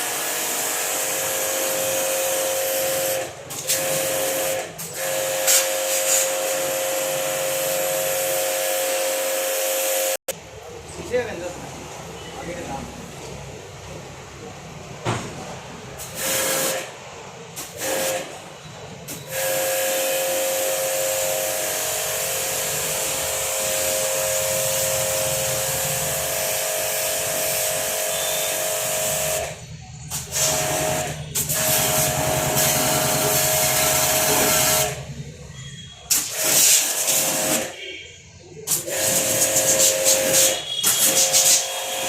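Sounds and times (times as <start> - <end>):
pump whine: 17.8 - 38.0
water jet spraying: 36.1 - 37.7, 38.7 - 42.0.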